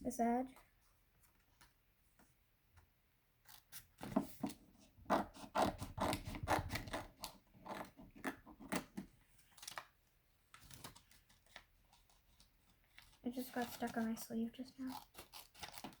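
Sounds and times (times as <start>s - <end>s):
scissors cutting paper: 3.5s - 9.0s, 10.7s - 14.2s, 14.8s - 16.0s.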